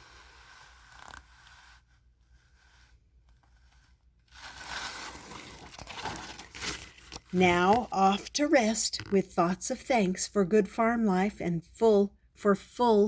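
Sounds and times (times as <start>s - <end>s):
paper pages rustling: 4.3s - 8.3s.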